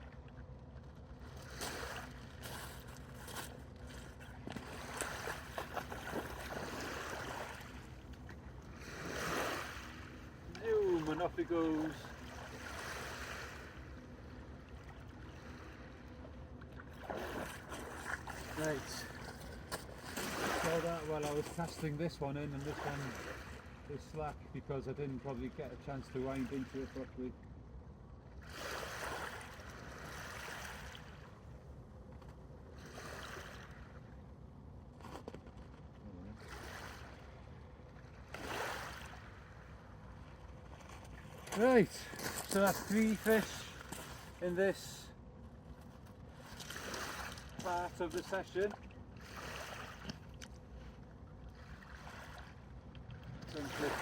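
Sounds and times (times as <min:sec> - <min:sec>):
sea water washing against dock: 0:01.2 - 0:16.0, 0:16.6 - 0:24.4, 0:38.2 - 0:39.6, 0:40.2 - 0:45.1, 0:46.3 - 0:50.5, 0:51.5 - 0:54.0.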